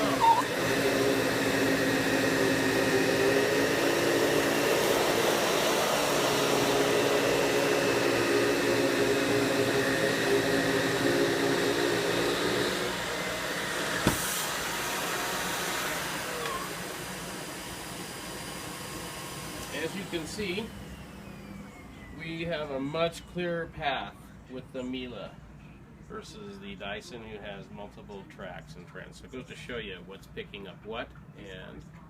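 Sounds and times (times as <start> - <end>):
vacuum cleaner motor droning: 0.0 - 23.1.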